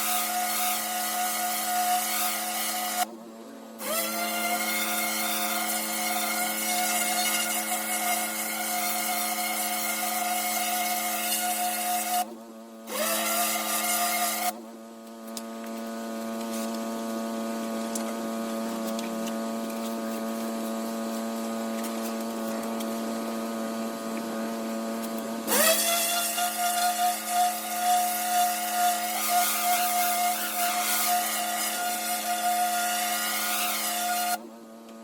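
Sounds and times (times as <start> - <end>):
pressure washer spraying brick: 0.0 - 3.0, 24.9 - 34.4.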